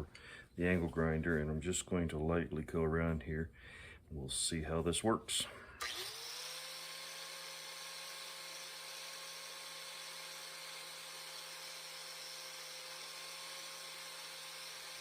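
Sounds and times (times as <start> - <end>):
angle grinder whining: 5.8 - 15.0.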